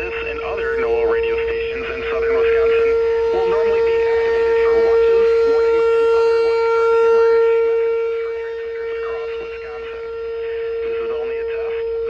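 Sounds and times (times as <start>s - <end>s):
people talking: 0.0s - 5.8s, 8.2s - 12.0s
warning siren steady tone: 0.0s - 12.0s.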